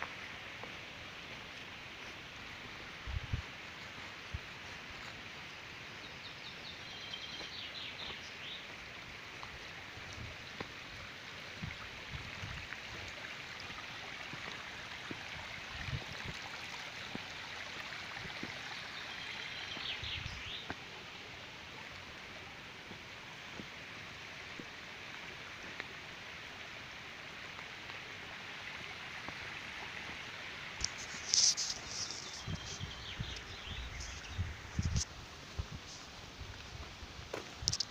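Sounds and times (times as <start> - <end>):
stream flowing: 0.0 - 37.9
songbird singing: 3.8 - 9.5, 18.4 - 20.9, 30.8 - 35.1.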